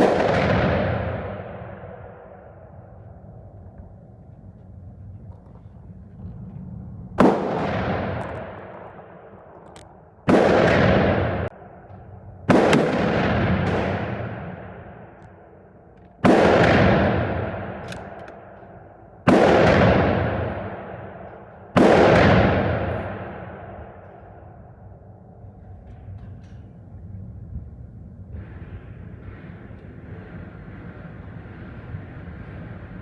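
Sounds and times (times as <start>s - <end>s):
rifle shots with echo: 0.0s - 3.3s, 7.1s - 25.0s.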